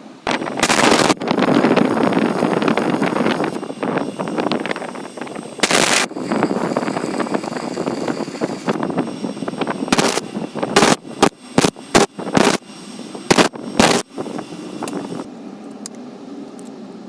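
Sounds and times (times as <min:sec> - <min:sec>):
belt grinder grinding: 0:00.3 - 0:12.6
short bursts of hiss: 0:01.8 - 0:15.3.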